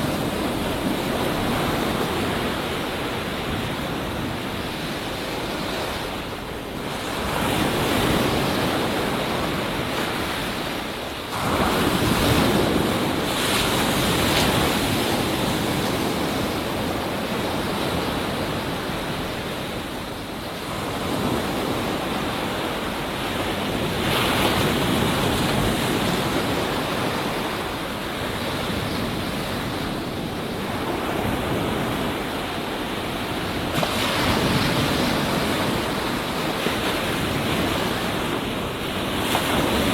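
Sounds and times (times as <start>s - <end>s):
ocean surf breaking: 0.0s - 39.9s.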